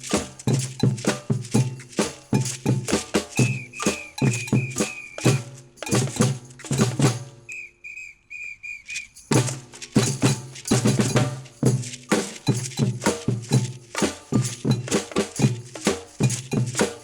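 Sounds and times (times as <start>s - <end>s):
deep drum beats: 0.0s - 7.4s, 9.4s - 17.0s
samba percussion group: 0.0s - 7.6s, 9.2s - 17.0s
shakers: 0.0s - 7.7s, 8.4s - 17.0s
samba whistle blasts: 3.3s - 5.9s, 7.4s - 9.2s.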